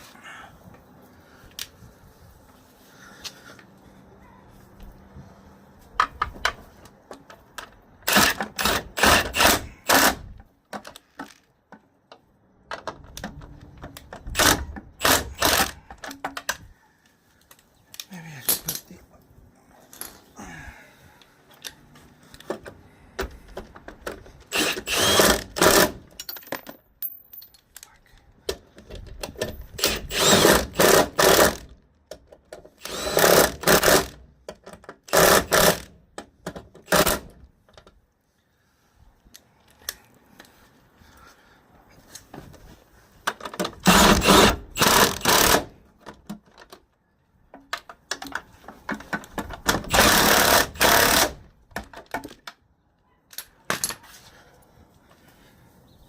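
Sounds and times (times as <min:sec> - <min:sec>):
power drill bursts: 0:08.0 - 0:10.2, 0:24.5 - 0:26.0, 0:29.8 - 0:31.6, 0:32.8 - 0:34.2, 0:43.8 - 0:45.7, 0:49.9 - 0:51.4.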